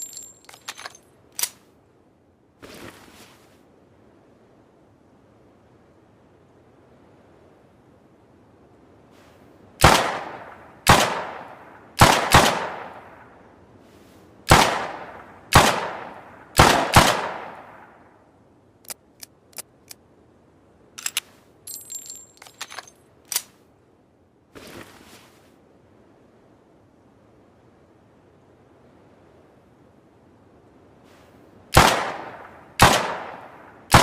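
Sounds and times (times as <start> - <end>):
metallic clicks and rattles: 0.0 - 1.6, 21.0 - 23.6
dry gun clicks: 0.5 - 1.6
soft scrape: 2.6 - 3.7, 9.1 - 9.5, 13.8 - 14.3, 24.6 - 25.6, 31.0 - 31.4
revolver gunshots ringing: 9.8 - 13.2, 14.5 - 18.0, 31.8 - 34.0.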